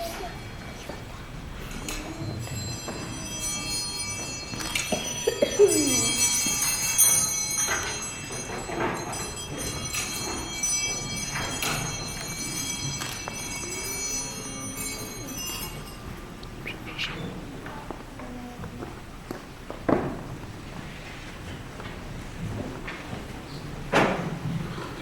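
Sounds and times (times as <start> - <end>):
bells ringing: 0.0 - 16.6.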